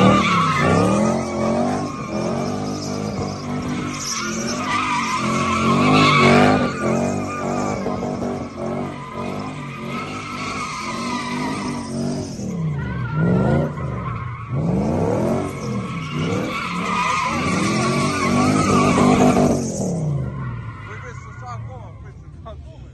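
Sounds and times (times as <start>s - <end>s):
tyres squealing: 0.0s - 22.0s
car engine revving: 0.0s - 22.9s.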